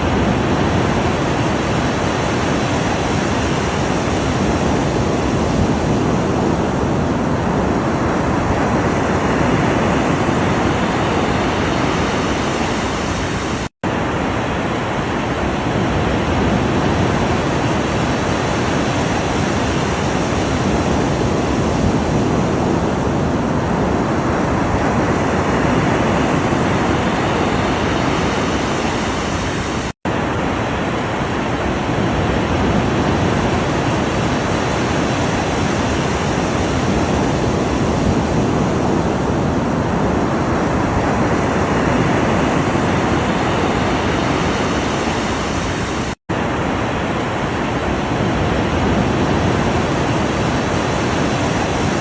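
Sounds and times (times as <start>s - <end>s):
ocean waves breaking: 0.0s - 52.0s.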